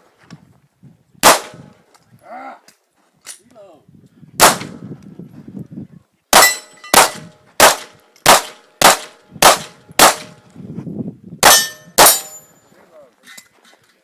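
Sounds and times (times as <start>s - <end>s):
pistol shots: 1.2s - 1.7s, 4.4s - 4.8s, 6.3s - 10.4s, 11.4s - 12.4s.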